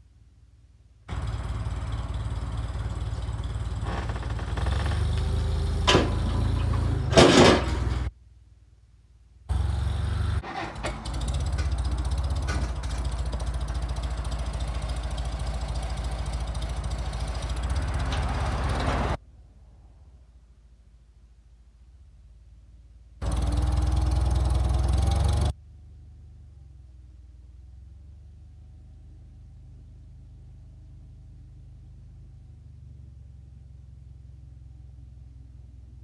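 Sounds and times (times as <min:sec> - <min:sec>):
heavy engine running: 0:01.1 - 0:08.1, 0:09.5 - 0:19.2, 0:23.2 - 0:25.5
sharp metal clanks: 0:02.2 - 0:08.1.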